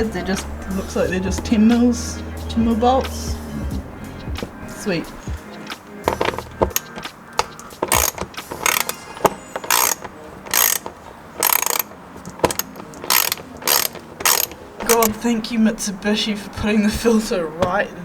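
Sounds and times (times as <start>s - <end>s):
socket ratchet clicking: 6.0s - 15.2s.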